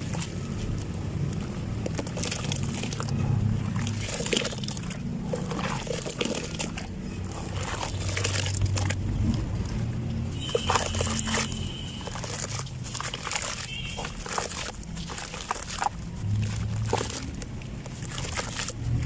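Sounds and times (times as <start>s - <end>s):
dried cement crumbling: 0.0s - 19.0s.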